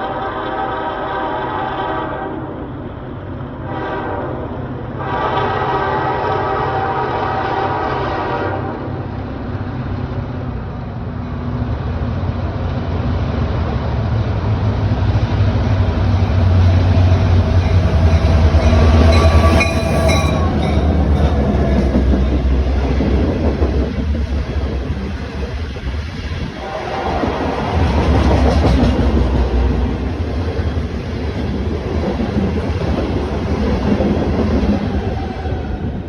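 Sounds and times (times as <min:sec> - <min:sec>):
locomotive air horn chord: 0:00.0 - 0:02.6, 0:03.6 - 0:08.9, 0:18.0 - 0:21.2, 0:26.6 - 0:27.5
train wheels on rail: 0:00.0 - 0:36.0
diesel engines rumbling past: 0:08.8 - 0:36.0.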